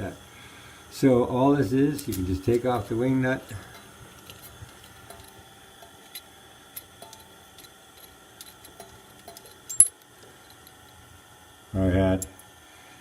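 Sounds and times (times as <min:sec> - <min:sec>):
small metal parts clicking: 0:01.9 - 0:11.0.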